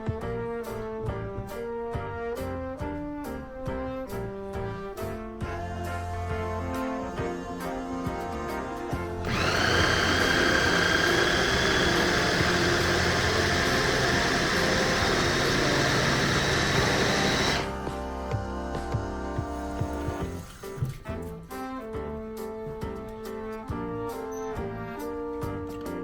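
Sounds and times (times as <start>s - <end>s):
background music: 0.0s - 26.0s
blender motor running: 9.2s - 17.8s.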